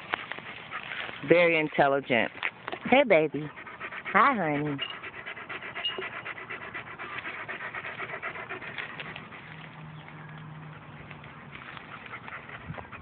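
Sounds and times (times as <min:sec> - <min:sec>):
dog panting: 0:02.9 - 0:09.8, 0:10.7 - 0:13.0.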